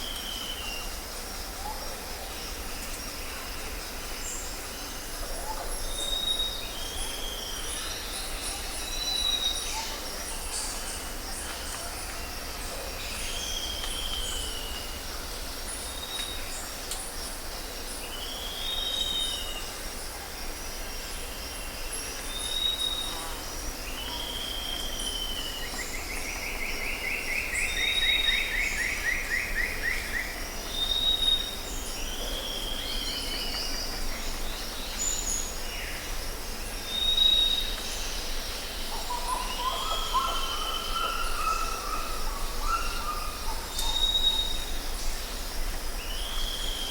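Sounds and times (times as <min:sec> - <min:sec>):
birds singing and calling: 0:36.8 - 0:45.4.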